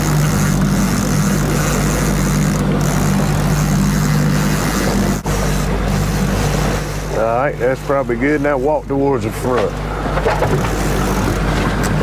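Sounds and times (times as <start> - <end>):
boat motor humming: 0.0 - 12.0
water noise: 0.0 - 12.0
wind: 0.0 - 12.0.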